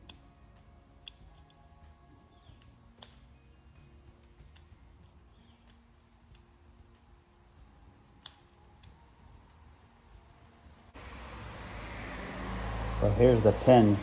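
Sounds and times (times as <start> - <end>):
small clicks and taps of tools: 1.0 - 1.7, 2.6 - 3.3, 4.1 - 6.5.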